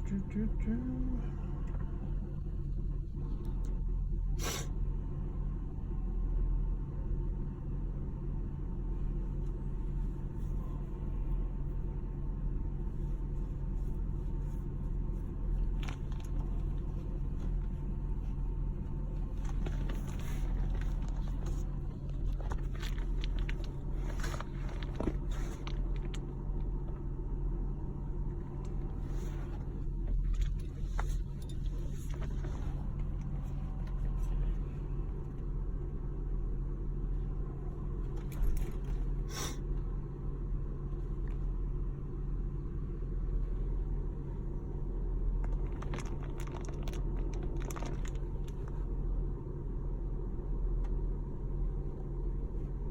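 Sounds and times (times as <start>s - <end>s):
car engine idling: 0.0s - 52.9s
brief clicks and rustles: 45.4s - 48.8s.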